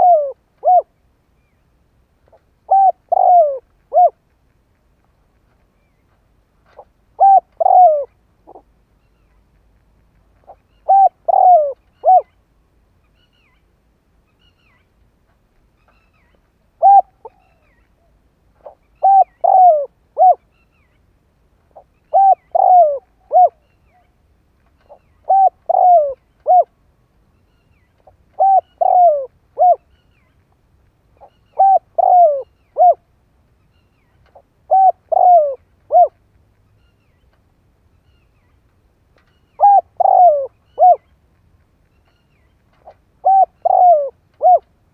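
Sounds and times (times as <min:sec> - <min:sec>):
dove cooing: 0:00.0 - 0:01.0, 0:02.6 - 0:04.2, 0:06.7 - 0:08.7, 0:10.4 - 0:12.3, 0:16.8 - 0:17.7, 0:18.6 - 0:20.4, 0:21.8 - 0:23.6, 0:24.9 - 0:26.8, 0:28.0 - 0:29.9, 0:31.2 - 0:33.1, 0:34.6 - 0:36.2, 0:39.6 - 0:41.1, 0:42.8 - 0:44.7.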